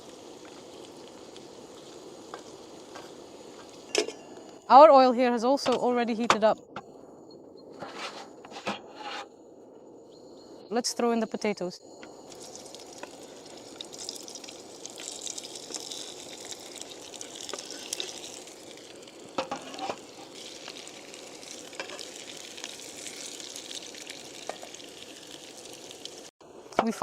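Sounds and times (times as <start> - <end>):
potatoes sizzling in oil: 0.0 - 6.6, 12.1 - 27.0.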